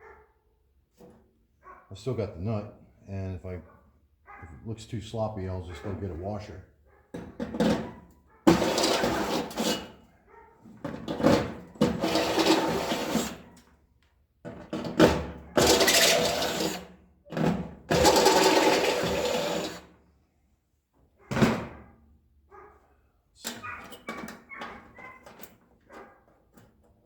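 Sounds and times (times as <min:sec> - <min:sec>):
electric drill drilling sheet metal: 0:08.5 - 0:09.8, 0:11.9 - 0:13.4, 0:15.6 - 0:16.9, 0:17.9 - 0:19.9.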